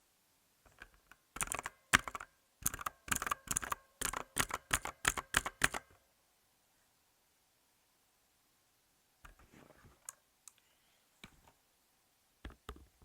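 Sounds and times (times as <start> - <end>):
clicky keyboard typing: 0.7 - 6.0.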